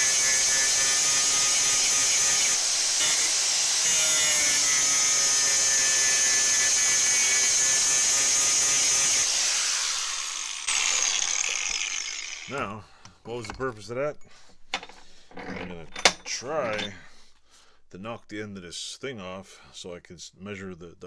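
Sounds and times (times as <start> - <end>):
electric grinder whining: 0.0 - 12.6.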